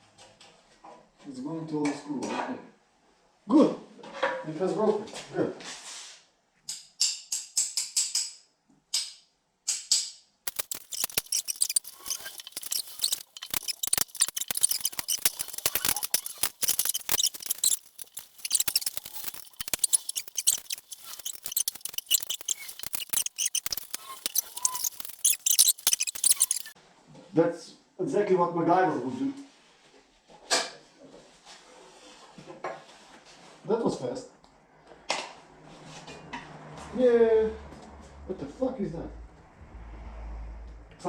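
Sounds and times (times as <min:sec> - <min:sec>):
hand tool clicking and scraping metal: 0:10.5 - 0:26.8.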